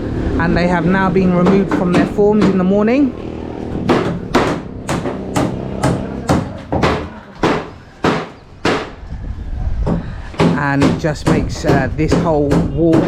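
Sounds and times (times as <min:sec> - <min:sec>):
hammer blows: 0:01.2 - 0:09.0.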